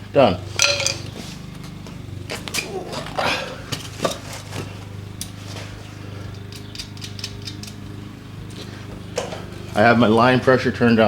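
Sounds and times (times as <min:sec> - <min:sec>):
steady low hum: 0:00.0 - 0:11.0
metal tools clicking and tapping: 0:00.6 - 0:01.2, 0:06.3 - 0:08.0.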